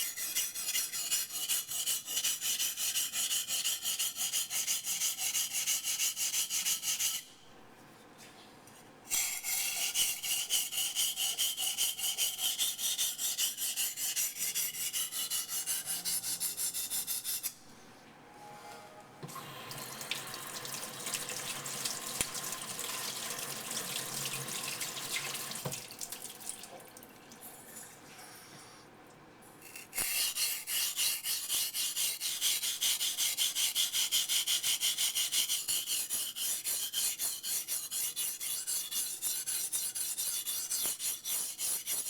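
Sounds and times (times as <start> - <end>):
knife scraping on waterstone: 29.6 - 33.1, 35.5 - 42.0.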